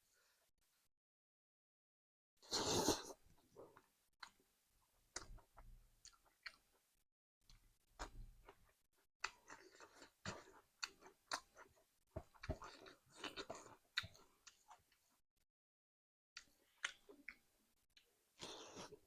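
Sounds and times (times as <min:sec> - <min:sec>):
person chewing food: 0:05.0 - 0:06.9, 0:07.5 - 0:15.2, 0:16.4 - 0:19.0.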